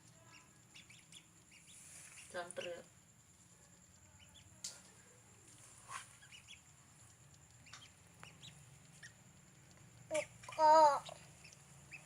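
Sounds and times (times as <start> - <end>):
chicks peeping: 0.3 - 2.8, 5.8 - 12.0.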